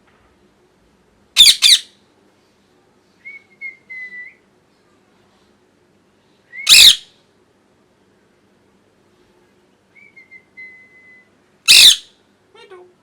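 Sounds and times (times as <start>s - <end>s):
parrot screeching: 1.4s - 1.9s, 6.7s - 7.0s, 11.7s - 12.1s
parrot soft whistle: 3.2s - 4.4s, 9.9s - 11.3s.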